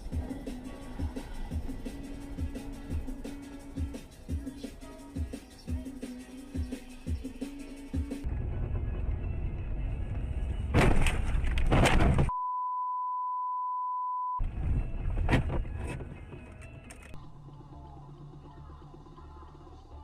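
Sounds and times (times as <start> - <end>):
censor bleep: 12.3 - 14.4.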